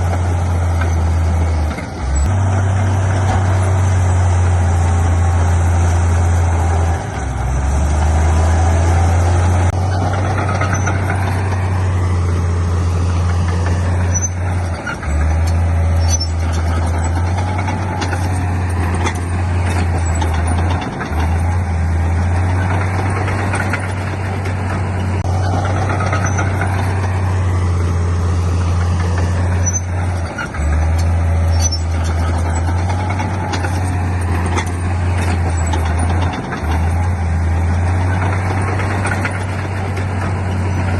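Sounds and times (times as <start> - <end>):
heavy diesel engine drone: 0.0 - 40.9
faint squeaks and ticks: 0.1 - 2.4, 9.9 - 11.6, 13.1 - 24.8, 25.4 - 27.1, 28.6 - 40.9.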